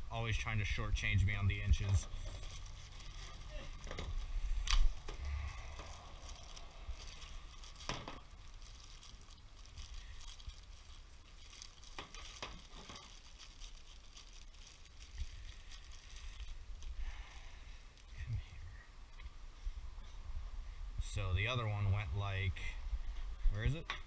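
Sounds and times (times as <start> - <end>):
small metal parts clinking: 2.0 - 18.2.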